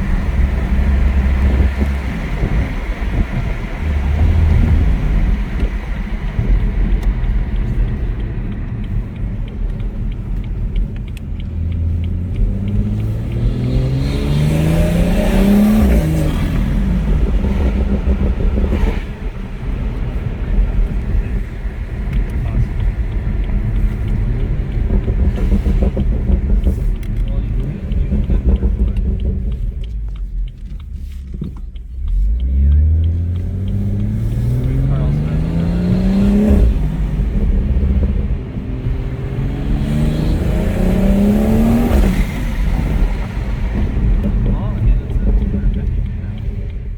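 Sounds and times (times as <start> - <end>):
car engine accelerating: 0.0 - 46.9.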